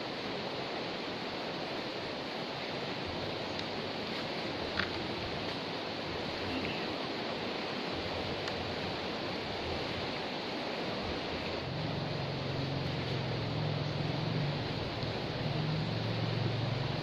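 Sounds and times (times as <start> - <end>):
river rushing: 0.0 - 17.0
low engine hum: 11.0 - 17.0.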